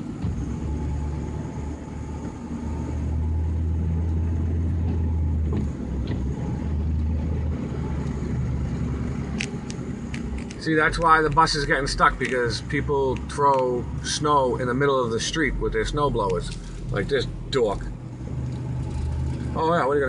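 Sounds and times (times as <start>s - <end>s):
vehicle engine rumbling: 0.0s - 20.0s.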